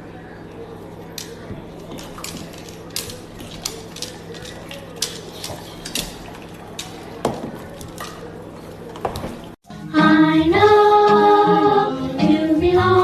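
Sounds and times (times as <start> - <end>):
clicks of small hard objects: 1.2 - 7.1.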